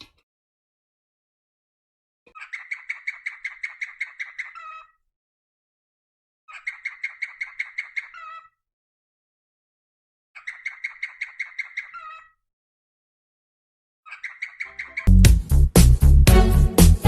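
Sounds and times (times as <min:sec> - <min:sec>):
bird chirping rapidly: 0:02.4 - 0:04.8, 0:06.5 - 0:08.5, 0:10.4 - 0:12.2, 0:14.1 - 0:15.2.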